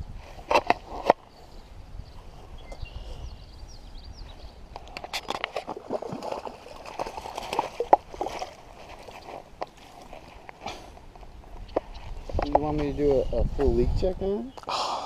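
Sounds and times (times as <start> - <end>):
water splashing and sloshing: 4.8 - 12.5.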